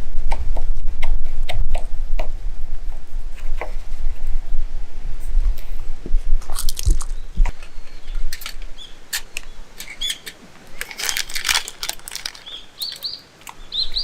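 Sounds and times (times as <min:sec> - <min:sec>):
low rumble: 0:00.0 - 0:09.8
campfire crackling and popping: 0:06.4 - 0:14.0.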